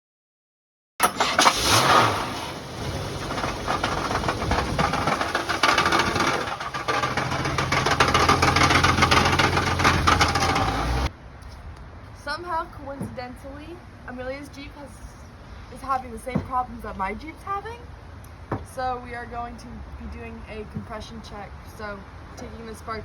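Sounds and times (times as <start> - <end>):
car engine running with rapid rattle: 1.0 - 11.1.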